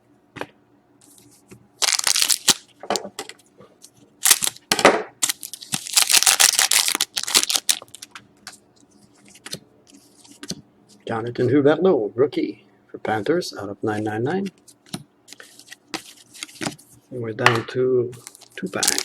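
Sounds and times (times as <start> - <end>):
foil wrapper crinkling: 1.8 - 2.7, 4.2 - 4.6, 5.2 - 8.2, 18.2 - 19.0.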